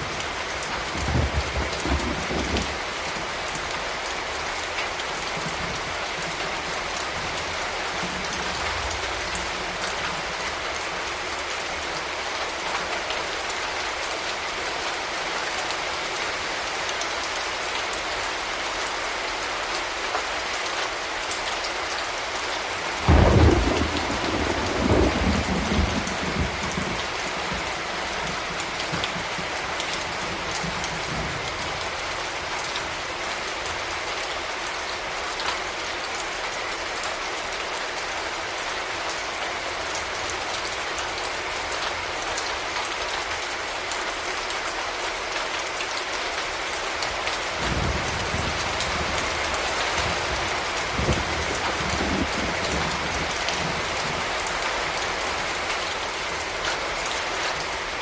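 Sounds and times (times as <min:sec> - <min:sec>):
thunderclap rumbling: 0:00.0 - 0:02.9, 0:23.0 - 0:31.8, 0:47.6 - 0:54.2
heavy rain hissing: 0:00.0 - 0:36.5, 0:46.2 - 0:58.0.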